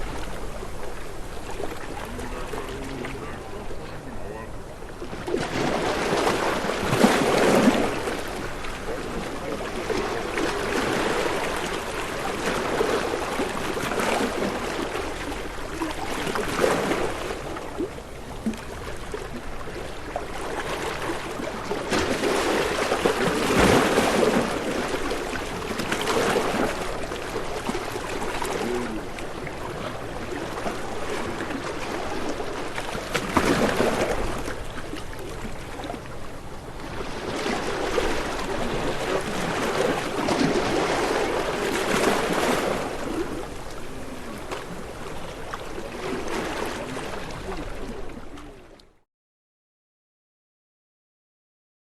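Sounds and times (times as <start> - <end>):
ocean waves breaking: 0.0 - 48.8.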